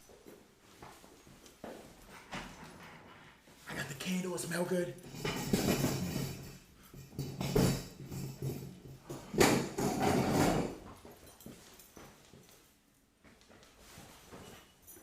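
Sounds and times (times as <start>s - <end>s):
objects knocking and clattering: 1.7s - 3.6s, 5.0s - 12.6s.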